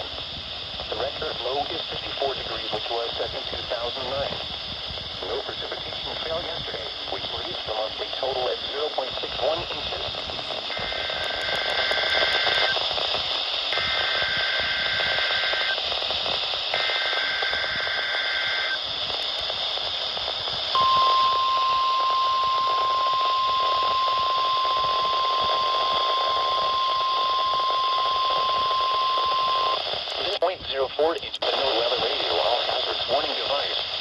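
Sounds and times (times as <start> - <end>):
radio static hiss: 0.0 - 34.0
steady warning alarm tone: 9.1 - 12.8, 13.7 - 15.8, 16.7 - 19.5, 20.7 - 29.8.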